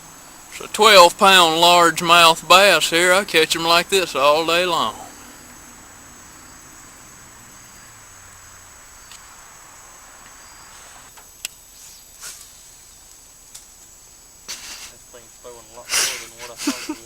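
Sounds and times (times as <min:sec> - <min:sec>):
insects droning: 0:00.0 - 0:17.0
soft outdoor hiss: 0:00.0 - 0:17.0
faint clicks: 0:09.1 - 0:09.3, 0:11.0 - 0:11.6, 0:12.4 - 0:13.9
sharp tick: 0:11.4 - 0:11.6.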